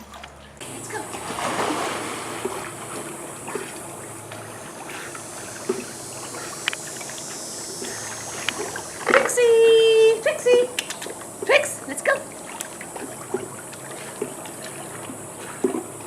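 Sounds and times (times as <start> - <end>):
small water splashes: 0.0 - 9.4, 10.5 - 16.0
water sloshing as dog swims: 0.0 - 16.0.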